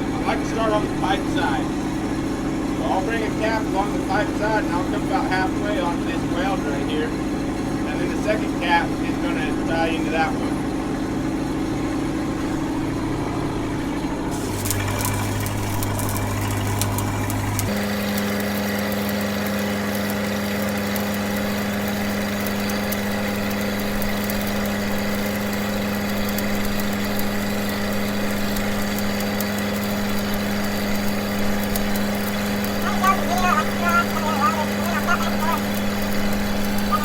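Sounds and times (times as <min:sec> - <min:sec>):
welding machine engine: 0:00.0 - 0:37.0
welding arc crackling: 0:14.3 - 0:37.0.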